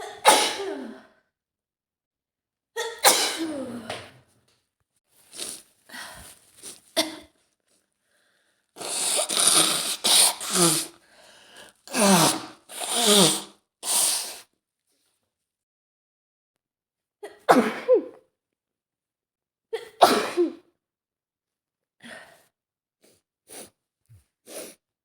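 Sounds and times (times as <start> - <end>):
woman sneezing: 0.0 - 1.0, 2.8 - 3.9, 8.8 - 10.9, 11.9 - 14.4, 19.8 - 20.6
catches of breath: 8.0 - 14.4.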